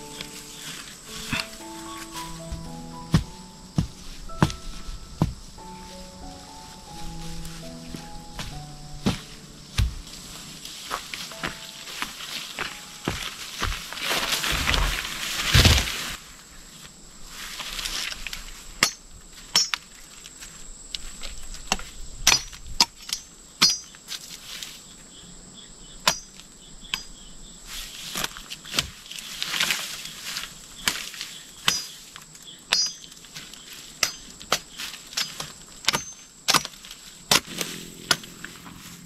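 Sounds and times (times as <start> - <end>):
rustling: 0.0 - 22.0, 27.6 - 39.0
high insect drone: 0.0 - 39.0
blade chopping wood: 2.6 - 5.4.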